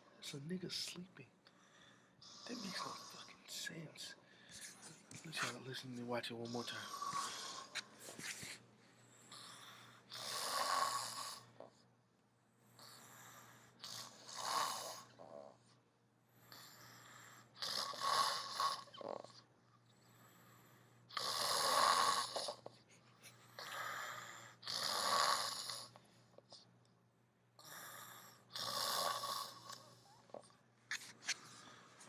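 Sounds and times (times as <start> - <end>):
quiet breathing: 0.0 - 10.3, 12.6 - 14.2, 14.8 - 17.6, 18.4 - 21.2, 22.3 - 24.6, 27.6 - 32.0
man snoring heavily: 2.3 - 3.2, 6.4 - 7.8, 9.4 - 11.6, 12.8 - 15.5, 16.5 - 19.2, 21.2 - 22.6, 23.6 - 26.0, 27.6 - 29.9.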